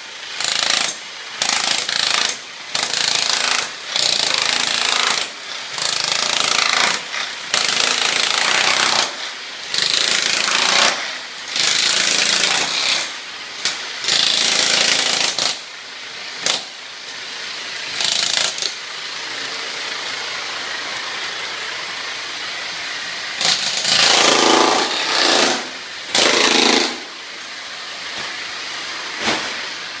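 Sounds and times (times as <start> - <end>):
electric demolition hammer chiselling: 0.0 - 17.2, 17.8 - 21.8, 23.4 - 27.6.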